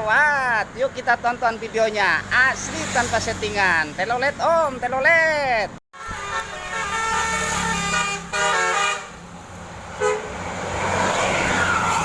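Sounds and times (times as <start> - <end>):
musical air horns tune: 6.0 - 9.2.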